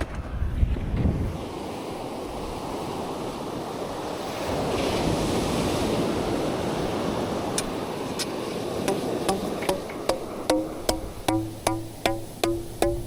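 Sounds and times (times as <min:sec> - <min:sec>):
wind on microphone: 0:00.0 - 0:10.4
ocean surf washing onto beach: 0:01.2 - 0:13.0.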